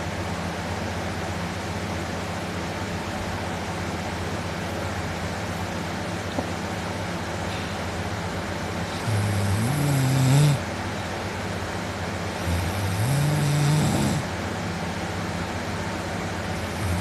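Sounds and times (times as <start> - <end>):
man snoring loudly: 8.8 - 10.7, 12.3 - 14.3, 16.5 - 17.0.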